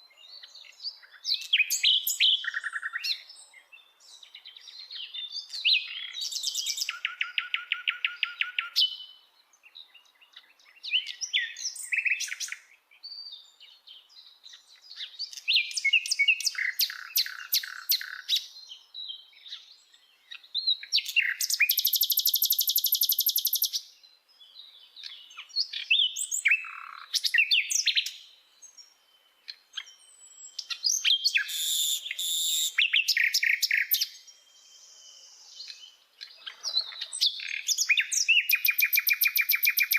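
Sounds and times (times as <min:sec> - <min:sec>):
nightingale singing: 0:00.0 - 0:39.9.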